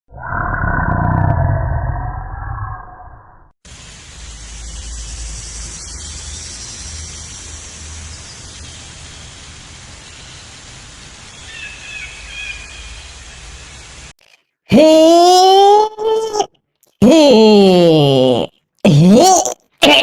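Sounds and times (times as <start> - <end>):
outdoor ambient hiss: 3.6 - 14.2.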